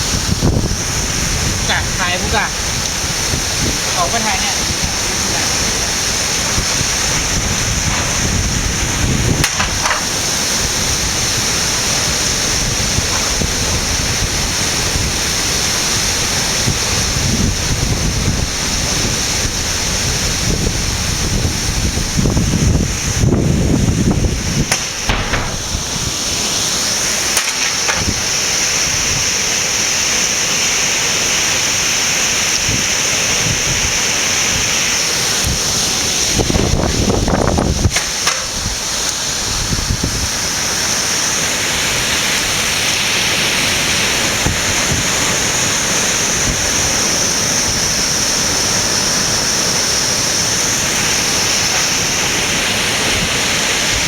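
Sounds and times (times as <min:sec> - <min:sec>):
heavy rain hissing: 0:00.0 - 0:54.0
wind gusting against microphone: 0:00.0 - 0:54.0.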